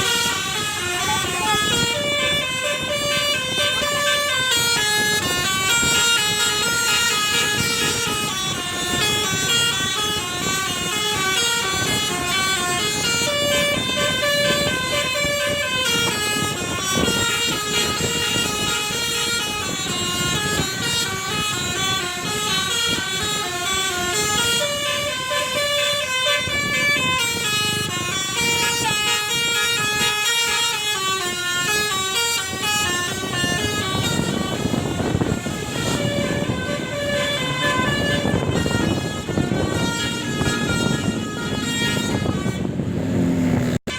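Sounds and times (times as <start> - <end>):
multi-trumpet bus horn melody: 0.0 - 43.9.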